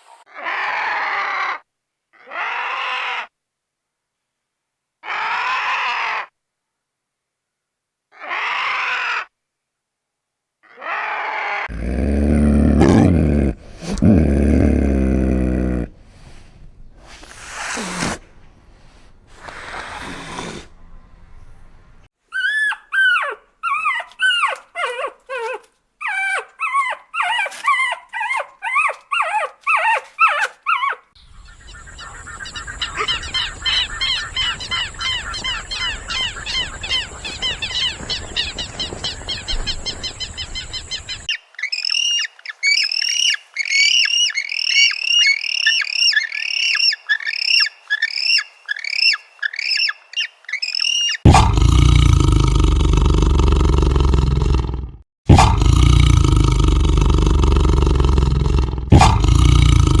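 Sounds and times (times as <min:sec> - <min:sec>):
animal yelping calls: 0:10.7 - 0:14.8, 0:22.3 - 0:31.2, 0:41.2 - 0:51.7, 0:58.1 - 1:00.0
high squawking calls: 0:22.3 - 0:51.3.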